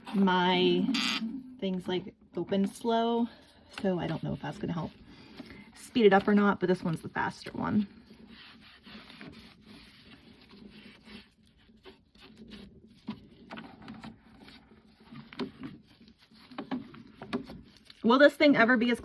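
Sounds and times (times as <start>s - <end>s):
faint rubbing on plastic: 2.9s - 19.0s.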